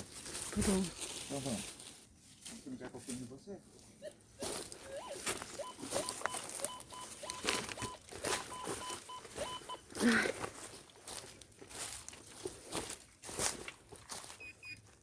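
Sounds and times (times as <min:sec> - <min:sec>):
footsteps crunching on dry brush: 0:00.0 - 0:15.0
metal detector short high beeps: 0:04.0 - 0:09.8.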